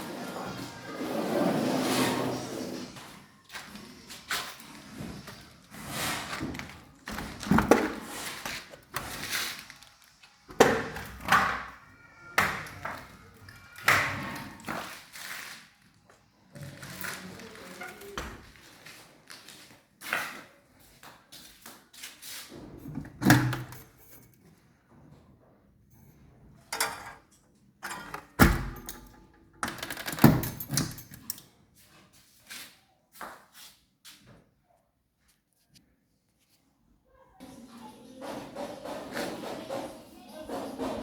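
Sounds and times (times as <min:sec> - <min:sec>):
handling knocks and scraping: 0:26.1 - 0:31.4.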